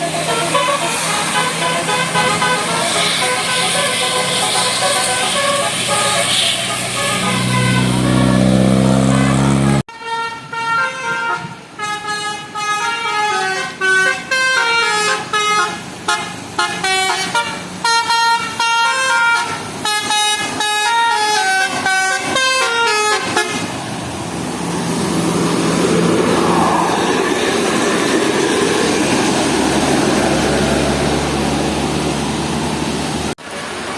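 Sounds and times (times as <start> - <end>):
multi-tone bus horn melody: 0.0 - 24.2
engine and road noise: 0.0 - 33.9.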